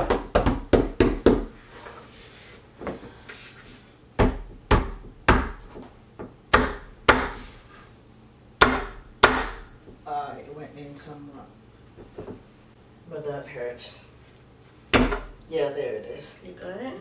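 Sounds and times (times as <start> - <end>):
hand knocking wooden panel: 0.0 - 1.5.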